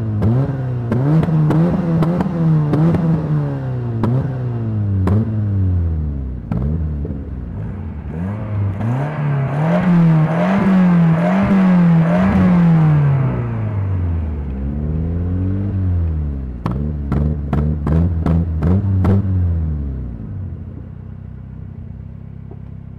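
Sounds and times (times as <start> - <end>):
car engine revving: 0.0 - 20.8
exhaust pops: 16.6 - 19.3.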